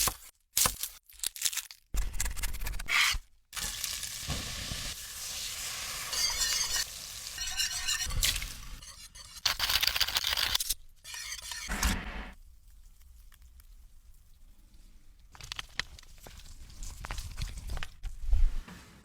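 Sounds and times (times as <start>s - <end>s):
food sizzling in a pan: 3.6s - 8.9s
stirring in a pan: 3.6s - 9.4s.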